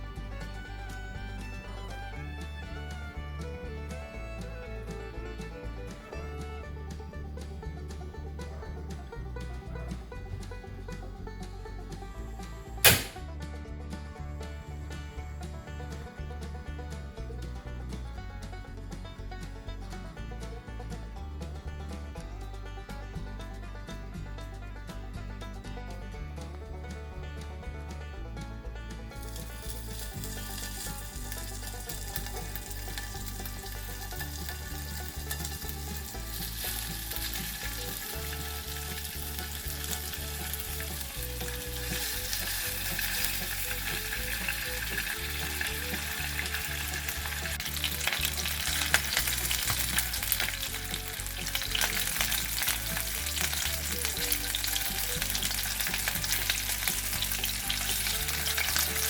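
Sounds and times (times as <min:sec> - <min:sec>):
egg and bacon sizzling in a pan: 0:29.3 - 0:59.0.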